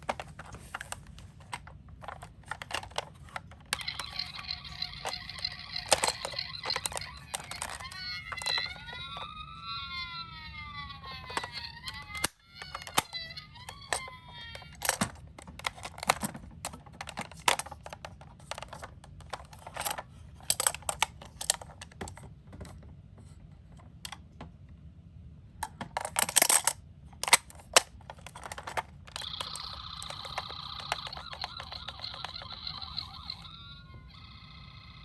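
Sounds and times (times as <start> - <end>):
toy cars clacking together: 0.0 - 10.0, 10.8 - 22.2, 25.7 - 35.0
toy electronic siren: 3.8 - 15.0, 29.2 - 35.0.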